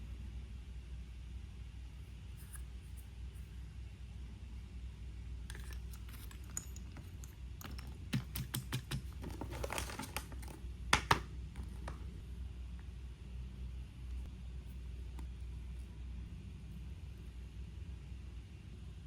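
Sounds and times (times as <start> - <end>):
low steady hum: 0.0 - 19.0
small plastic parts clicking: 5.5 - 12.0.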